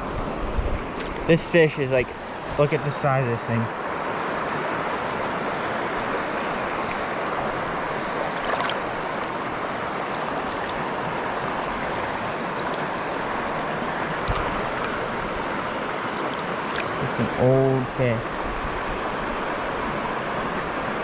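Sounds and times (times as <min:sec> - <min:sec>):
creek water running: 0:00.0 - 0:21.0.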